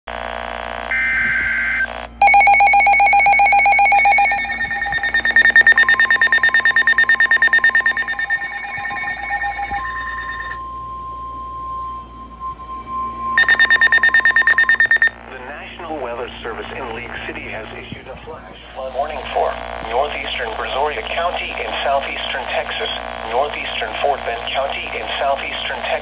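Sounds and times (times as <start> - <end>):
brief tones: 1.0 - 15.2
rapidly pulsing alarm beeps: 2.2 - 15.2
steady warning tone: 2.2 - 15.8.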